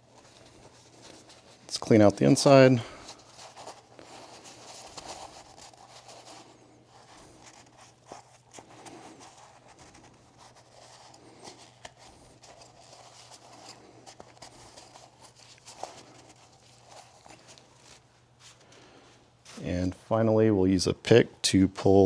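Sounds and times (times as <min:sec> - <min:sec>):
rubbing and scratching: 0:00.0 - 0:19.9
faint steady hum: 0:00.0 - 0:22.0.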